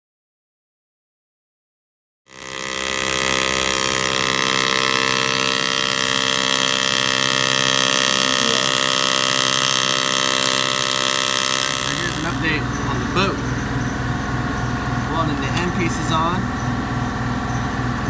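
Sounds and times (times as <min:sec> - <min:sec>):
welding arc buzzing: 0:02.3 - 0:12.7.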